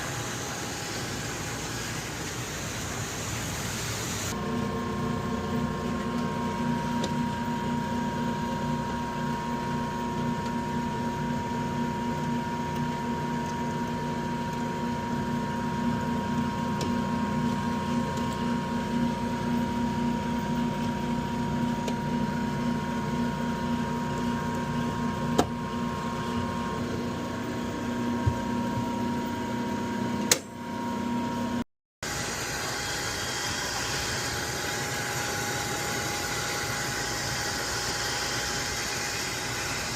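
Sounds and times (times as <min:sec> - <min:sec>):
steady running machine noise: 0:00.0 - 0:39.9
motor humming: 0:32.0 - 0:39.9.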